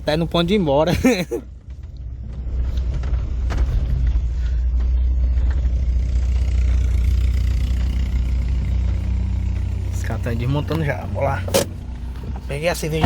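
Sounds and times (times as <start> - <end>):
car deep rumble: 0.0 - 13.0.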